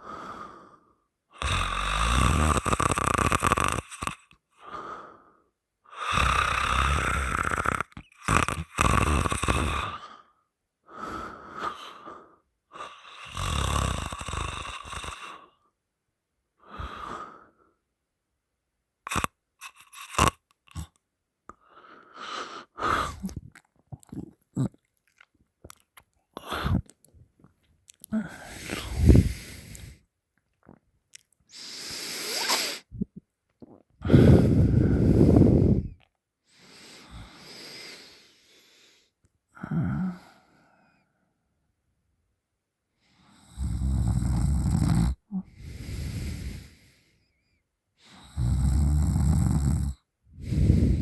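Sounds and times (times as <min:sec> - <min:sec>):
person snoring wheezily: 0:01.4 - 0:05.3, 0:05.9 - 0:10.3, 0:10.9 - 0:15.6, 0:16.6 - 0:17.6, 0:19.1 - 0:21.0, 0:21.9 - 0:25.8, 0:26.4 - 0:27.0, 0:27.9 - 0:30.0, 0:31.5 - 0:40.8, 0:43.2 - 0:47.0, 0:48.0 - 0:51.0
mouth clicks and smacks: 0:23.1 - 0:31.5, 0:32.3 - 0:34.0.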